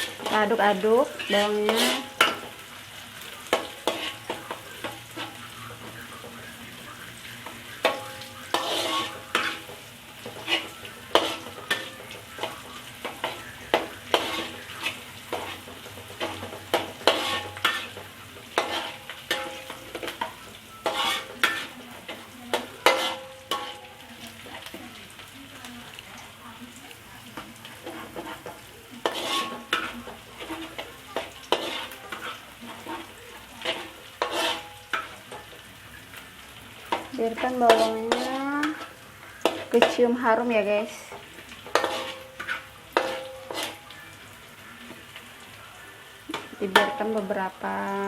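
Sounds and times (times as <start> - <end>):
spatula scraping and knocking pan: 0.0 - 2.6, 3.4 - 6.6, 7.2 - 24.8, 27.3 - 35.7, 36.8 - 40.2, 41.1 - 44.0
onions sizzling in oil: 0.0 - 48.0.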